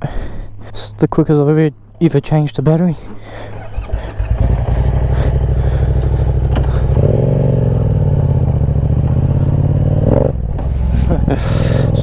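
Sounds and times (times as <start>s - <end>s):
motorcycle engine running: 3.5s - 12.0s.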